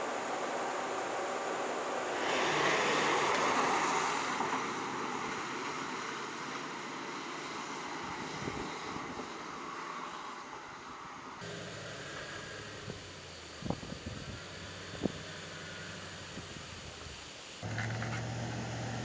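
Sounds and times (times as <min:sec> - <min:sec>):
vehicle passing by: 0:02.2 - 0:06.0, 0:17.6 - 0:19.0.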